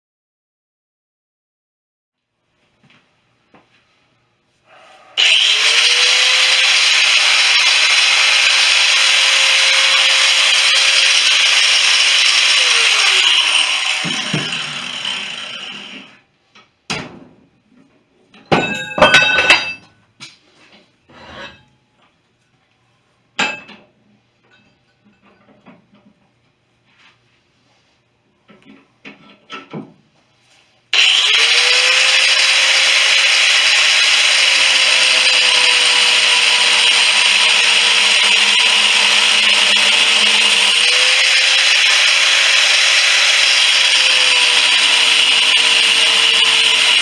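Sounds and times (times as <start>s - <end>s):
electric grinder grinding metal: 5.2s - 16.2s, 30.9s - 47.0s
metal clanks: 18.4s - 20.0s.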